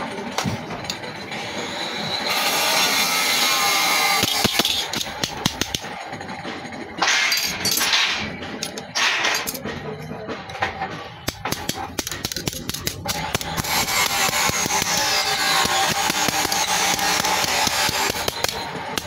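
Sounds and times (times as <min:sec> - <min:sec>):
metal clanks and taps: 0:06.5 - 0:13.5.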